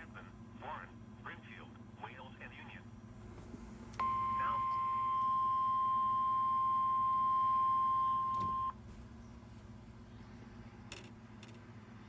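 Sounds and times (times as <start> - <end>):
steady alarm tone: 4.0 - 8.8.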